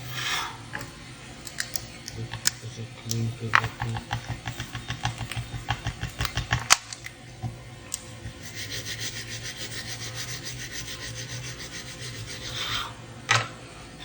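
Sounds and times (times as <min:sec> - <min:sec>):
brush scratching circuit board: 0:03.5 - 0:06.8, 0:08.2 - 0:12.9.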